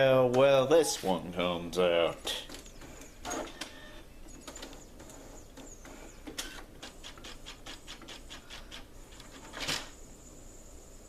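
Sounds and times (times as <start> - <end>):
printer rasp: 2.8 - 8.8.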